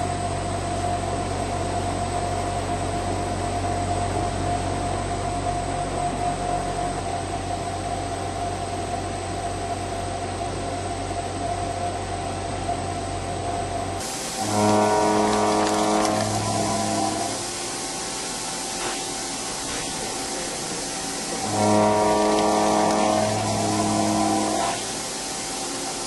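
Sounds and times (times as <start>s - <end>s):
low hum: 0.0s - 18.4s, 21.2s - 25.1s
machine whine: 0.0s - 26.0s
noisy hiss: 0.0s - 26.0s.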